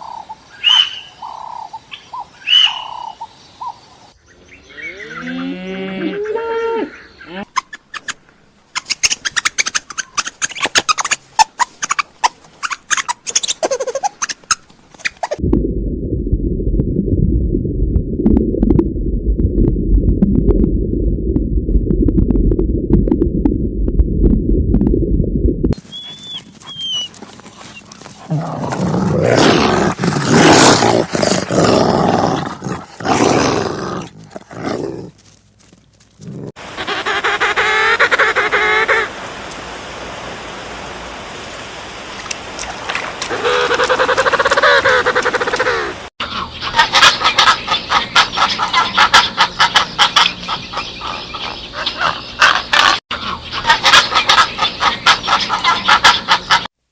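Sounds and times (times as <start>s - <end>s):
animal clicks and chirps: 8.8s - 15.4s
large animal roaring and growling: 28.3s - 35.0s.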